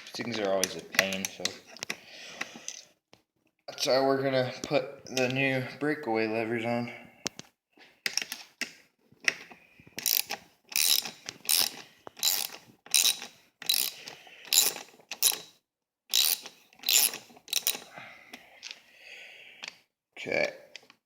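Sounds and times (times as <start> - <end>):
ratchet wrench clicking: 10.0 - 15.5, 16.1 - 17.9.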